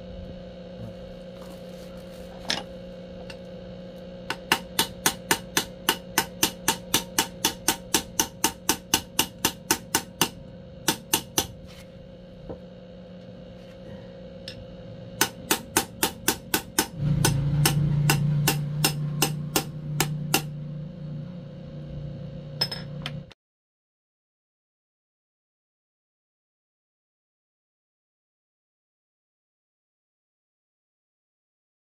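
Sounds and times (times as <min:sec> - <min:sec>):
loud low hum: 0:00.0 - 0:23.4
hammer tapping metal: 0:04.3 - 0:11.6, 0:15.2 - 0:20.6.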